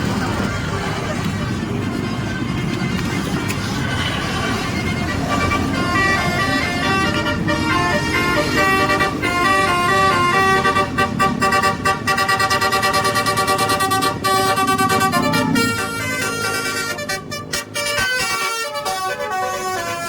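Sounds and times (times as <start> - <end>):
engine and traffic rumble: 0.0 - 20.0
bus musical horn tune: 3.9 - 20.0.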